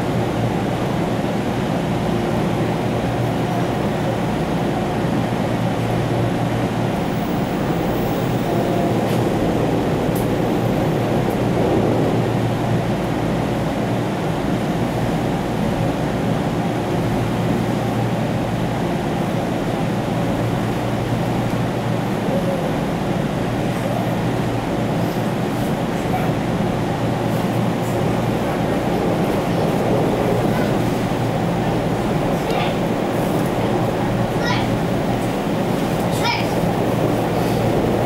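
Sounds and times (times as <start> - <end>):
train wheels rushing on rails: 0.0 - 38.0.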